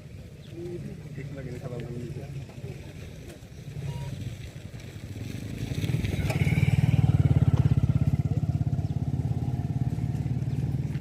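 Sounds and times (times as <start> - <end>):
motorcycle engine throbbing: 5.8 - 11.0.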